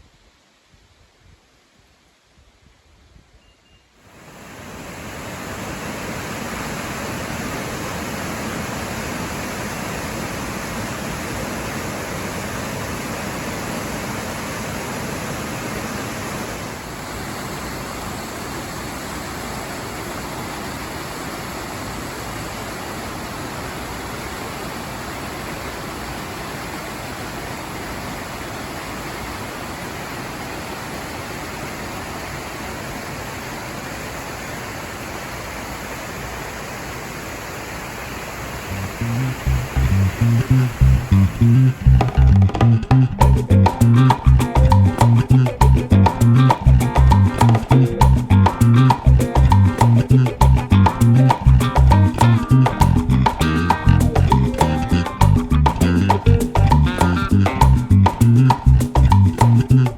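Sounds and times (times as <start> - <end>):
flowing water rushing: 4.1 - 43.5.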